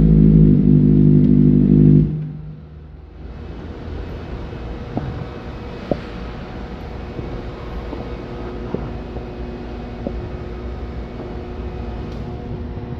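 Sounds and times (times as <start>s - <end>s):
motorcycle engine running: 0.0s - 3.0s.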